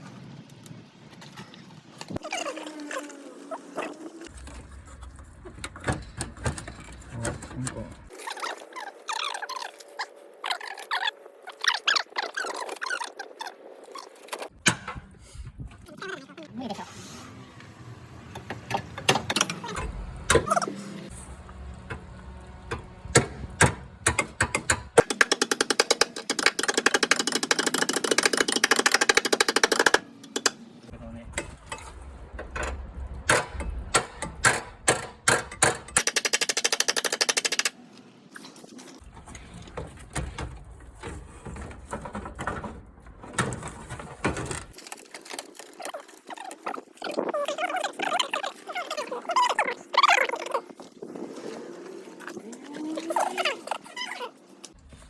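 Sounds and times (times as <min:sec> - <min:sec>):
metal parts clicking and knocking: 0:23.2 - 0:30.6, 0:31.4 - 0:37.7.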